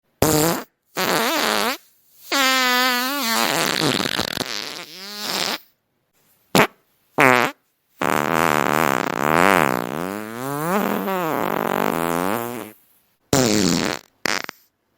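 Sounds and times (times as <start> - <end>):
fart sounds: 0.2 - 5.7, 6.5 - 14.7.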